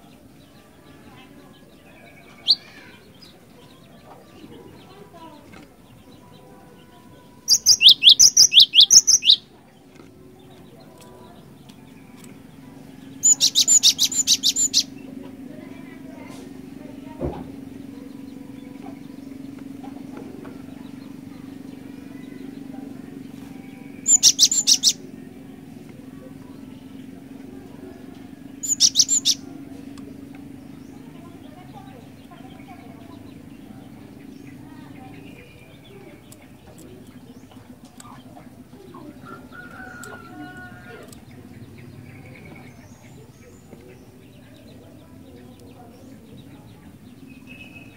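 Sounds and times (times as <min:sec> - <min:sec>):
steady low hum: 0:04.8 - 0:47.9
bird calling: 0:07.4 - 0:09.6, 0:13.1 - 0:15.4, 0:17.5 - 0:45.0
bird calling sharp high notes: 0:07.5 - 0:09.4.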